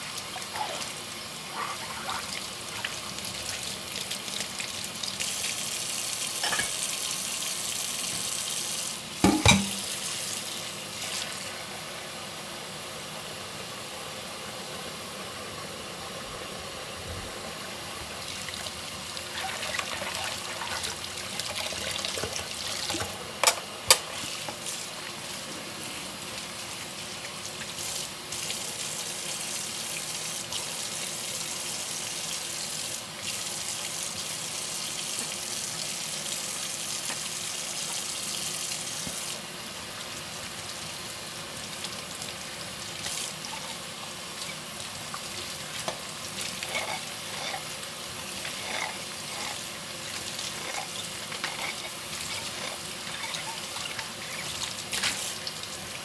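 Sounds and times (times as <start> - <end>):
dishes knocking together: 9.2 - 9.9
tap water splashing into sink: 9.2 - 10.1, 53.3 - 55.8.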